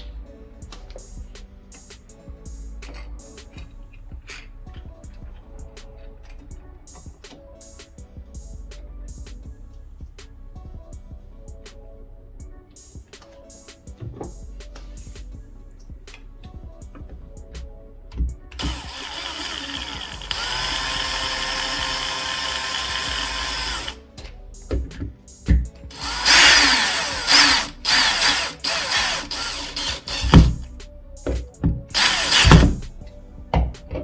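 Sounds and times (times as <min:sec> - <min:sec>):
power drill running: 0:18.6 - 0:24.0, 0:25.9 - 0:30.6, 0:32.0 - 0:32.8.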